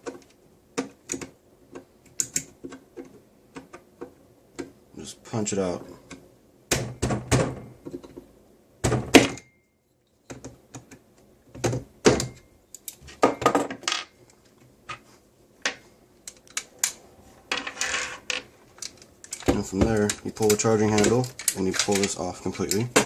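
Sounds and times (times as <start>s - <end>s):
parts being handled: 5.7s - 23.0s.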